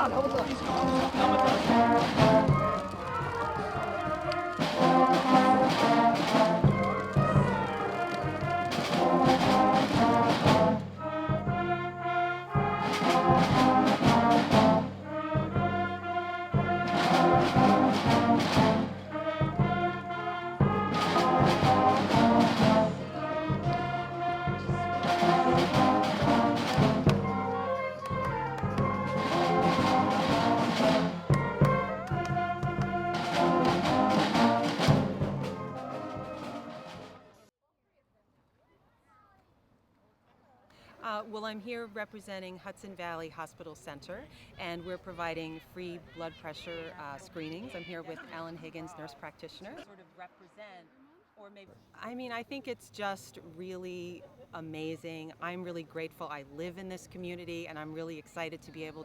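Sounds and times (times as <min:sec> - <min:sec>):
drum strokes: 0:00.0 - 0:37.4
trumpets and trombones playing: 0:00.0 - 0:37.5.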